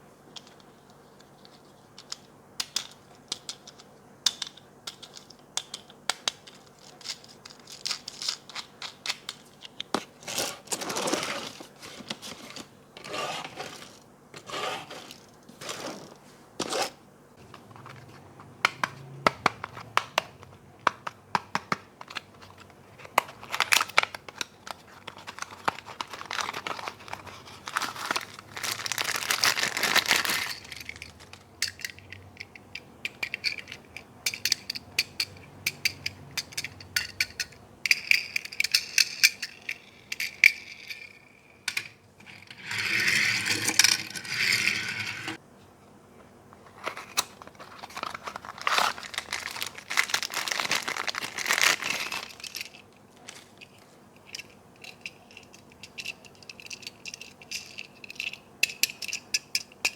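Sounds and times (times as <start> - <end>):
plastic packaging crinkling: 22.1 - 32.1, 46.7 - 54.0.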